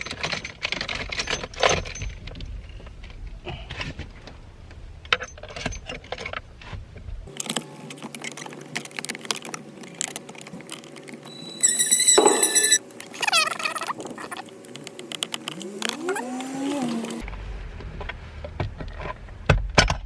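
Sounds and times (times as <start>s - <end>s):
high-pitched tone: 11.3s - 12.8s.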